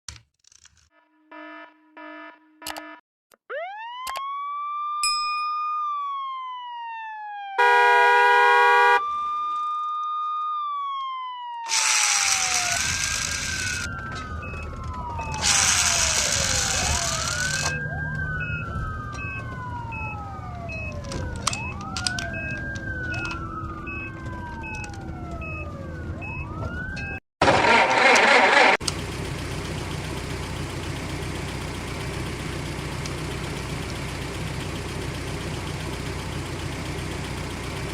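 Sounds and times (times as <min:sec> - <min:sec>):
electronic siren wailing: 0:00.9 - 0:05.0, 0:05.8 - 0:28.8
loud horn blast: 0:07.6 - 0:09.1
engine-like rumble: 0:12.0 - 0:37.9.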